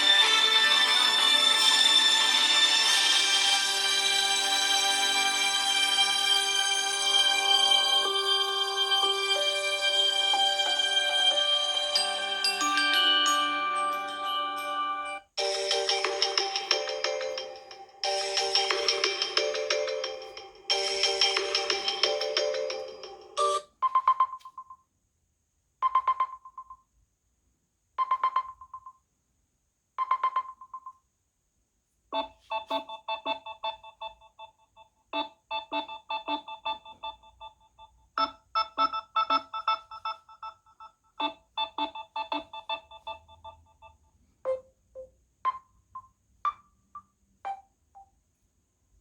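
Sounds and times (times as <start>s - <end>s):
phone ringtones: 6.8s - 24.4s, 32.2s - 34.5s, 35.2s - 44.6s.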